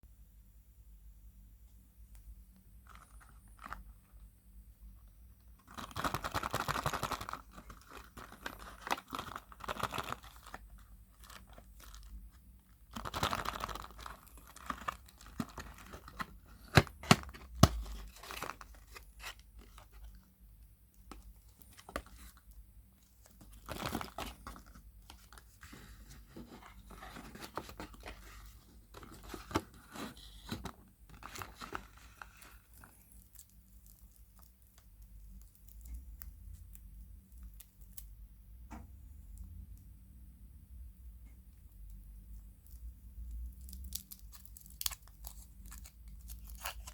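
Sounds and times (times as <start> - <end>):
wrappers rustling and tearing: 5.6 - 20.2, 23.2 - 35.9, 43.5 - 46.9.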